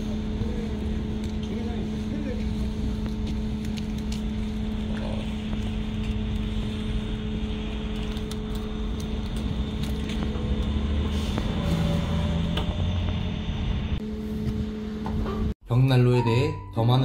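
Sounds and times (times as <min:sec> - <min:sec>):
fire crackling in a stove: 0:00.0 - 0:13.3
steady low hum: 0:00.0 - 0:15.6.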